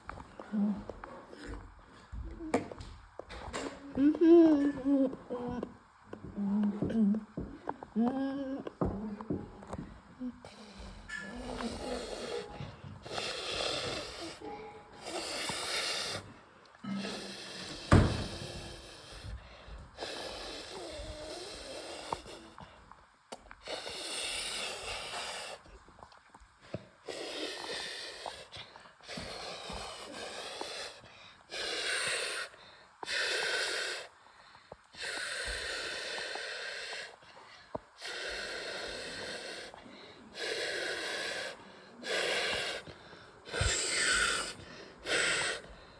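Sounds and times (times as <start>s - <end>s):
breathy noisy bursts: 38.0s - 45.9s.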